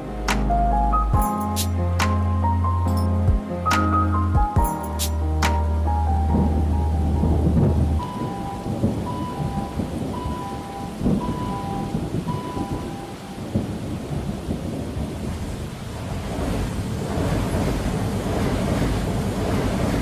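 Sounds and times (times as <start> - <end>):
lofi hip hop backing track: 0.0 - 9.0
rain crackle: 4.9 - 20.0
low thunder rumble: 5.9 - 20.0.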